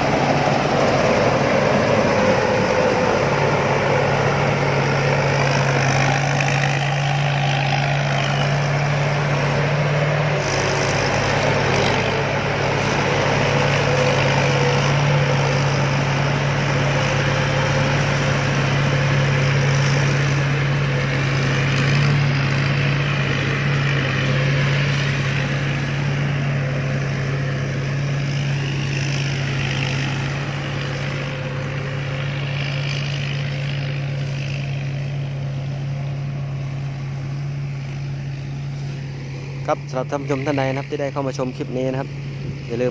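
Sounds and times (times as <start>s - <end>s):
diesel engine humming: 0.0s - 42.9s.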